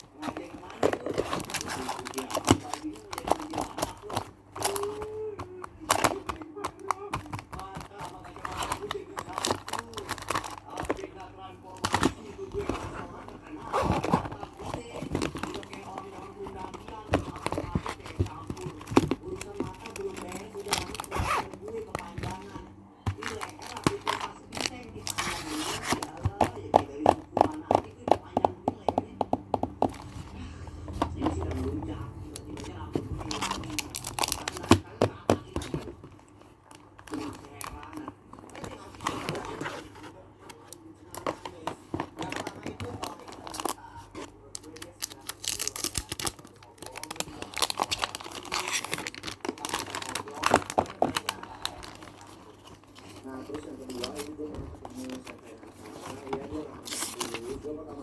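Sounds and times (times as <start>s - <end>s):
packaging rustling: 0.0s - 28.0s, 29.8s - 58.0s
fingers tapping on packaging: 0.2s - 11.1s, 25.8s - 30.2s.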